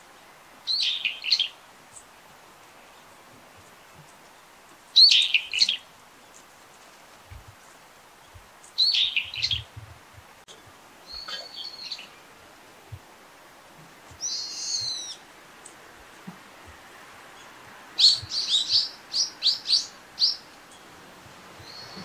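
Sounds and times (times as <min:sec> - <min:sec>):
bird calling: 0:00.6 - 0:02.1, 0:04.9 - 0:06.5, 0:08.6 - 0:09.7, 0:10.5 - 0:12.4, 0:14.1 - 0:16.4, 0:17.3 - 0:20.9, 0:21.5 - 0:22.0.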